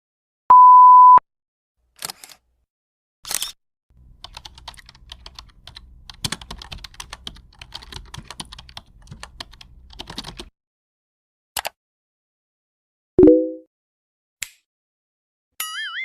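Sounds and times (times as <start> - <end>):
keyboard typing clicks: 4.2 - 10.5.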